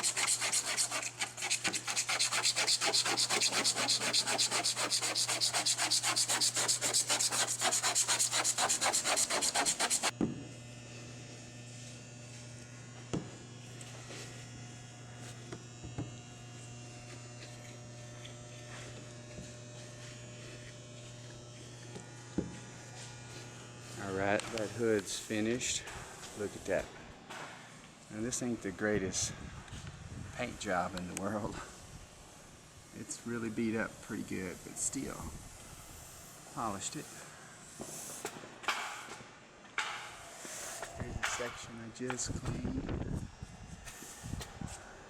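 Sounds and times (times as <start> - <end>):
rhythmic rubbing on car paint: 0.0 - 10.2, 17.1 - 24.0
steady low hum: 0.0 - 45.0.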